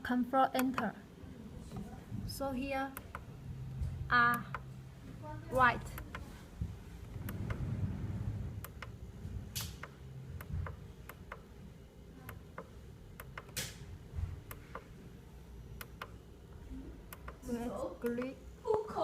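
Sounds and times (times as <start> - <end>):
light control buttons clicking: 0.5 - 0.9, 2.9 - 3.3, 4.3 - 4.7, 5.9 - 6.3, 8.6 - 9.0, 9.6 - 11.5, 12.3 - 13.8, 15.8 - 16.2, 17.1 - 17.4, 18.0 - 18.4.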